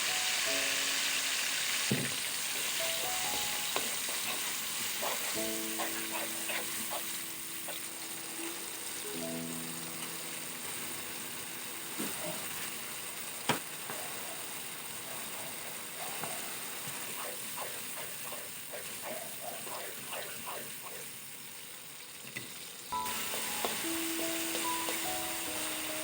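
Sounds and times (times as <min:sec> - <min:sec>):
food sizzling in a pan: 0:00.0 - 0:26.0
knock: 0:01.9 - 0:02.2.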